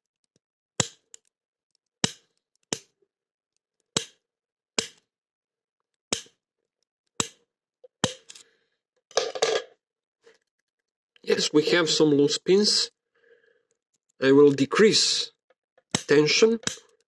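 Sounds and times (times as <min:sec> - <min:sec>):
sharp metallic snaps: 0:00.8 - 0:03.0, 0:03.9 - 0:04.2, 0:04.8 - 0:05.1, 0:06.1 - 0:06.4, 0:07.1 - 0:08.4, 0:15.8 - 0:17.0.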